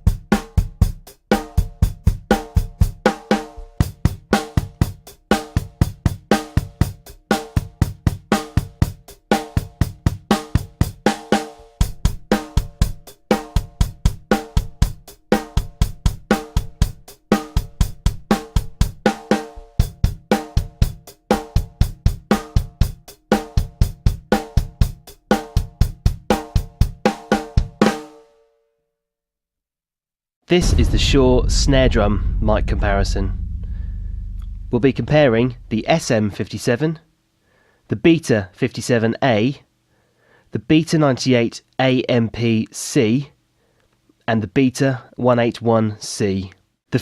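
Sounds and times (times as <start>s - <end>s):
drum kit playing a groove: 0.0s - 28.0s.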